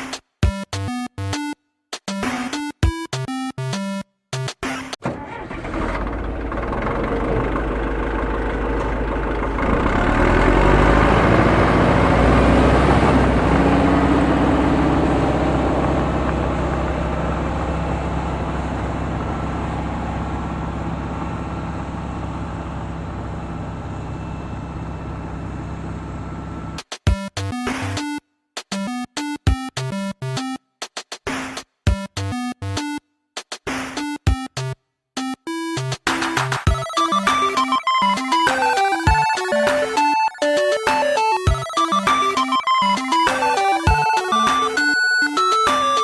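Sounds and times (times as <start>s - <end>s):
engine running: 5.0s - 26.8s.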